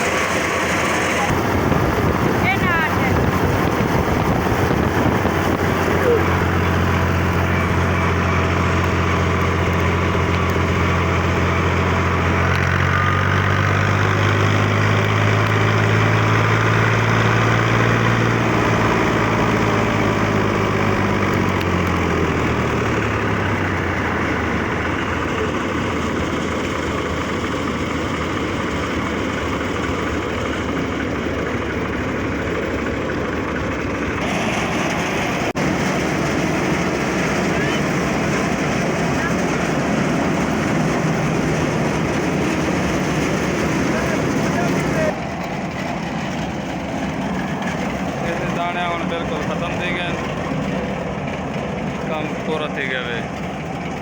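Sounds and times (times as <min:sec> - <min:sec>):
steady mechanical noise: 0:00.0 - 0:54.0
tractor engine running: 0:00.0 - 0:54.0.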